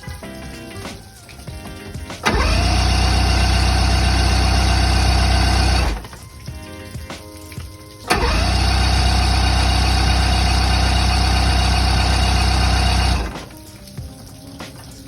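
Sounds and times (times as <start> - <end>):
boat engine running: 2.2 - 6.2, 8.1 - 13.6.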